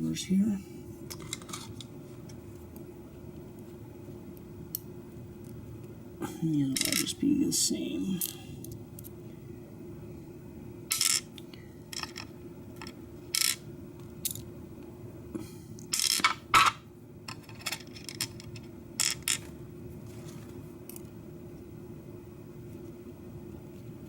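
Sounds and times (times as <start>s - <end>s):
low steady hum: 0.0s - 24.0s
small metal parts clicking: 10.9s - 11.3s, 11.9s - 13.6s, 14.2s - 14.4s, 15.9s - 16.7s, 17.3s - 19.5s.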